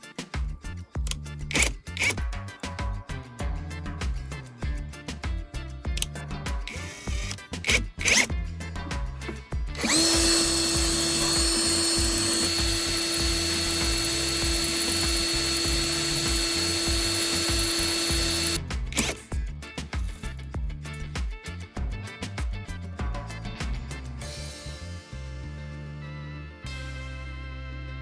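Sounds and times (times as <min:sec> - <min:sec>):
background music with steady beat: 0:00.0 - 0:28.0
small motor running: 0:01.5 - 0:02.2, 0:06.7 - 0:08.3, 0:09.8 - 0:19.3.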